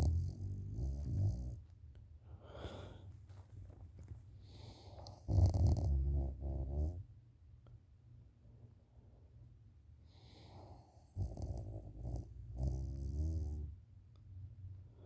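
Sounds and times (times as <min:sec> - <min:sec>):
soft breath: 0:02.2 - 0:03.8, 0:04.4 - 0:05.3, 0:10.0 - 0:11.2.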